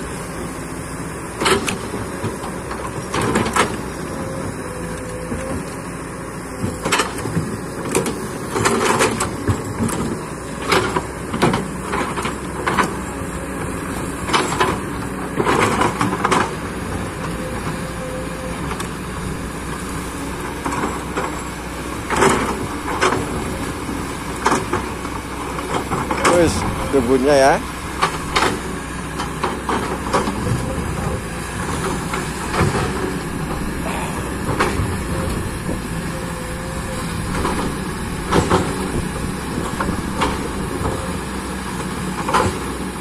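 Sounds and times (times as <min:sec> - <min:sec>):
excavator diesel engine running: 0:00.0 - 0:43.0
bucket clanking and scraping: 0:25.8 - 0:28.6.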